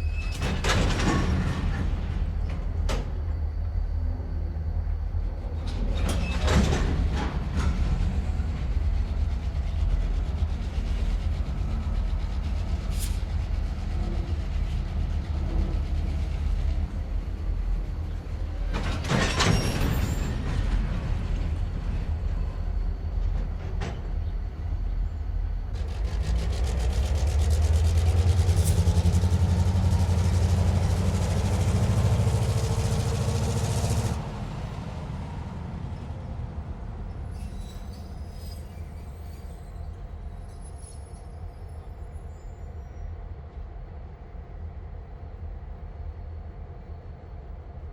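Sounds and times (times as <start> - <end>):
metal clank or screech: 0.0 - 3.1, 5.7 - 7.3, 18.8 - 20.8, 37.3 - 41.7
trains rumbling: 0.0 - 47.9
rumble with rising tone: 25.5 - 37.4.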